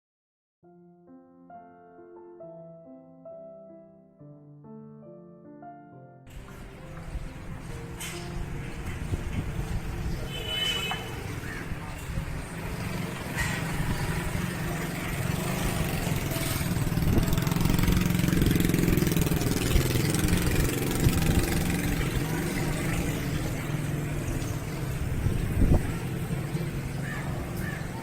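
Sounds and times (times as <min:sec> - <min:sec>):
motorcycle engine running: 0:12.2 - 0:28.0.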